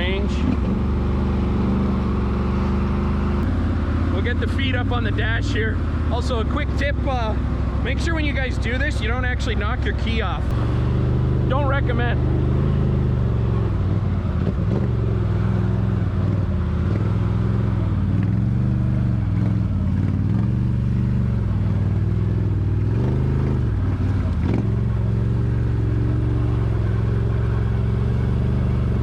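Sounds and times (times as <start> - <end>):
atv engine revving: 0.0 - 29.0.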